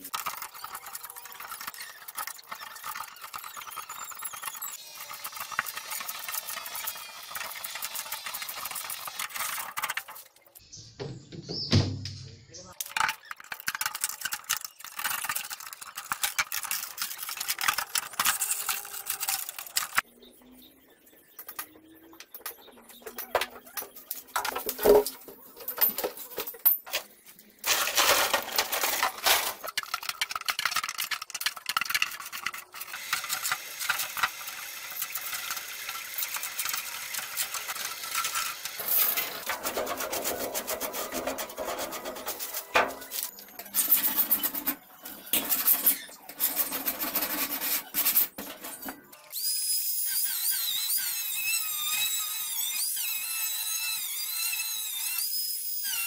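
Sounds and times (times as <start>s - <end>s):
metal scraping and rubbing: 0.0s - 10.5s, 12.9s - 20.0s, 22.4s - 49.3s
metal parts clinking and knocking: 12.8s - 20.0s, 21.4s - 49.2s.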